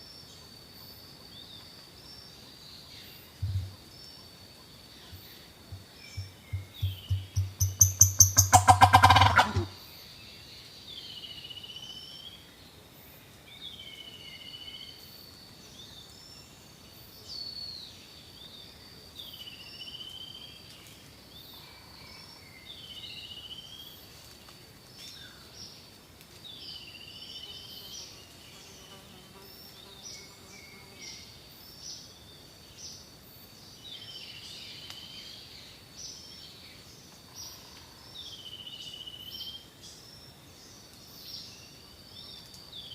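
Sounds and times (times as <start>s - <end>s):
turkey calls: 6.2s - 9.8s.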